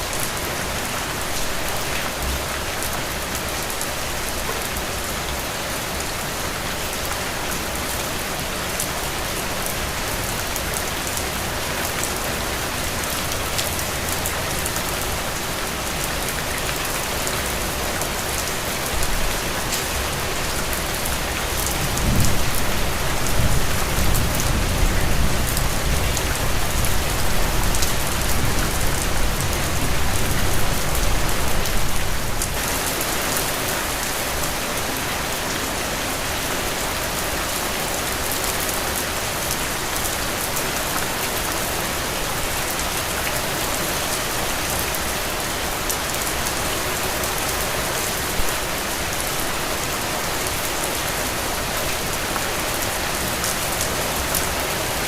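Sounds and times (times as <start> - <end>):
heavy rain falling: 0.0 - 55.0
low rumble of thunder: 21.8 - 26.1.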